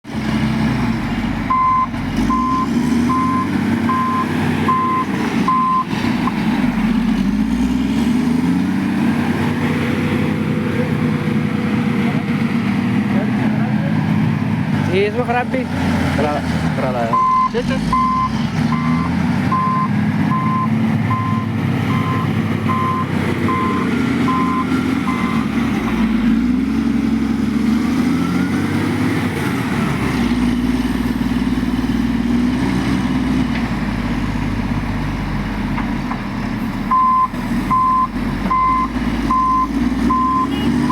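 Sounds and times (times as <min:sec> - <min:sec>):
engine running: 0:00.0 - 0:40.9
reversing alarm beeping: 0:01.5 - 0:05.9, 0:17.1 - 0:25.5, 0:36.9 - 0:40.9.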